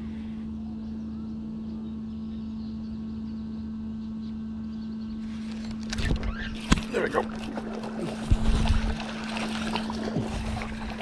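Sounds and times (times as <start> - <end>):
low mechanical hum: 0.0 - 11.0
faint bird chirps: 0.2 - 5.5.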